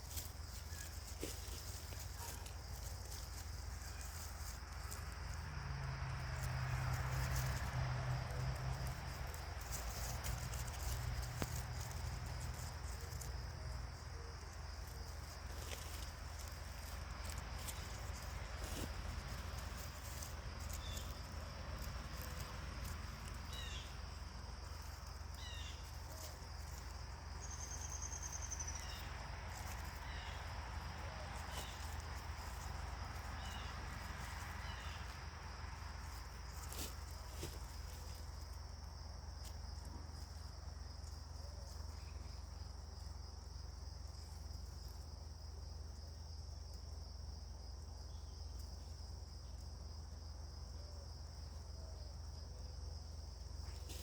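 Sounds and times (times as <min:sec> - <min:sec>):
high insect chirring: 0:00.0 - 0:46.8
songbirds chirping: 0:09.1 - 0:39.0.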